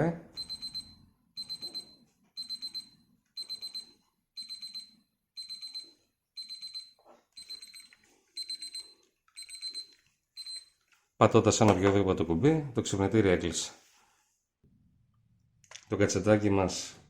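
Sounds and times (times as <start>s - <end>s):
alarm clock beeping: 0.3s - 10.8s.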